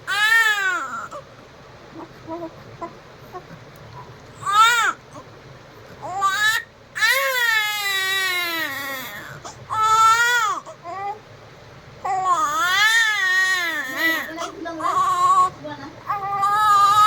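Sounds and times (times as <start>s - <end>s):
baby crying: 0.1s - 1.2s, 4.4s - 5.2s, 6.0s - 11.2s, 12.0s - 15.5s, 16.1s - 17.0s.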